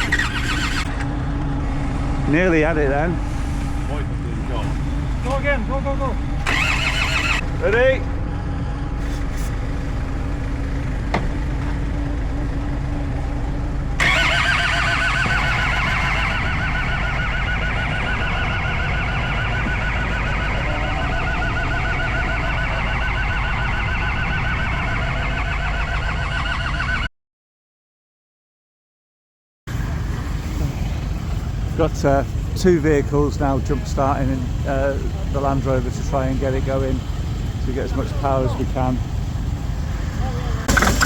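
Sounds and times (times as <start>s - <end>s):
engine cranking on starter: 0.0s - 1.1s, 6.3s - 7.9s, 14.0s - 17.2s, 33.1s - 41.0s
low engine hum: 0.0s - 26.0s, 29.7s - 41.0s.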